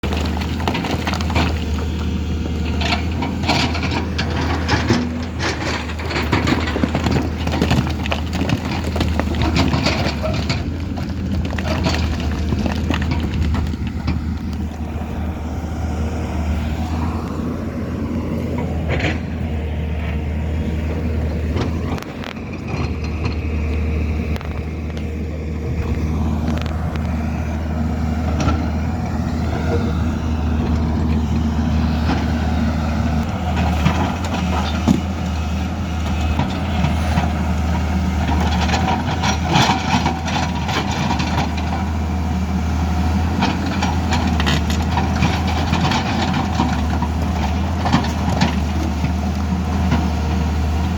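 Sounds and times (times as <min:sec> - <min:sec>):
diesel engine droning under load: 0:00.0 - 0:50.9
metallic clanks and rattles: 0:02.6 - 0:14.6.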